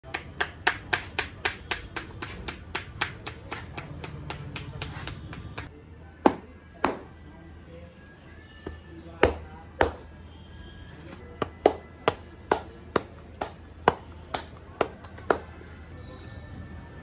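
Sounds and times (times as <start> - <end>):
hands tapping in quick rhythm: 0.0 - 5.7, 11.4 - 15.5.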